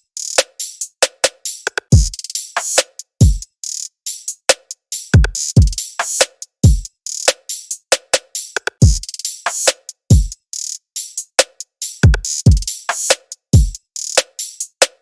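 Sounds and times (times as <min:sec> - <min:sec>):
drum machine beat: 0:00.0 - 0:15.0
hi-hat and snare hits: 0:00.0 - 0:15.0
deep kick drums: 0:10.1 - 0:10.3.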